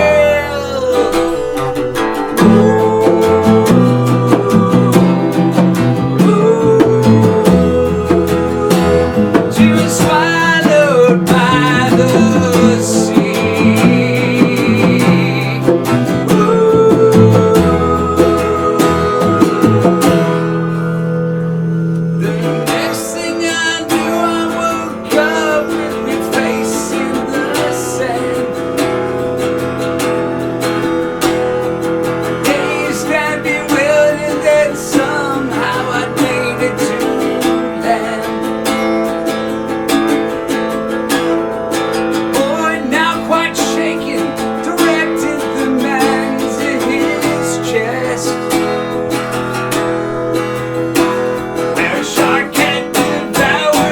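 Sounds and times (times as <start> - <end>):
strummed guitar: 0.0 - 53.9
wavering melody line: 0.0 - 53.9
live band music: 0.9 - 22.9.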